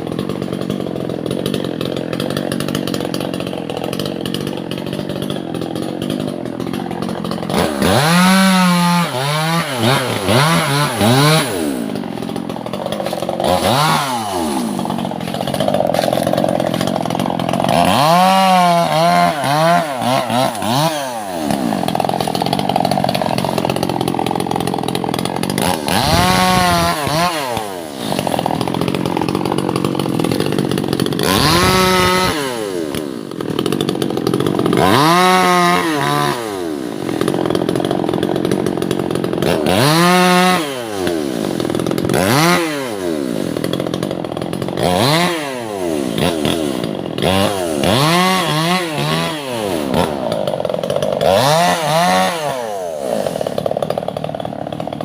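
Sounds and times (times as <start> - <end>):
chainsaw idling and revving: 0.0 - 55.0.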